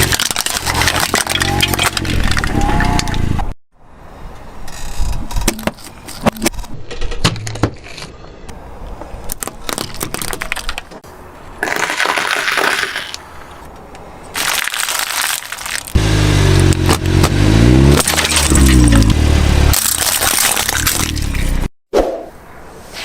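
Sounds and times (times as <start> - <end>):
brittle things crunching and cracking: 0.0 - 3.2, 9.3 - 11.0, 11.6 - 13.3, 14.3 - 16.0, 17.8 - 21.5.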